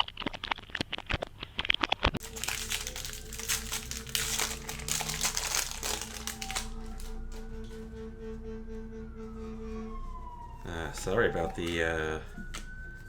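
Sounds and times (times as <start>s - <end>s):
foil wrapper crinkling and tearing: 0.0s - 7.4s
steady low drone: 2.2s - 12.4s.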